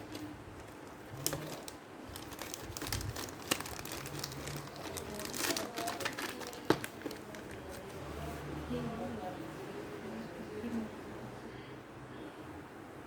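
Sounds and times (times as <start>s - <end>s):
packaging crinkling: 0.0s - 8.0s.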